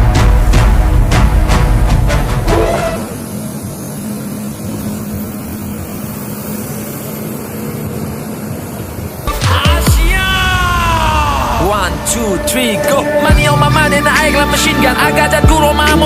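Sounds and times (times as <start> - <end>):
background music: 0.0 - 3.5, 9.3 - 16.0
engine running with whine: 0.0 - 16.0.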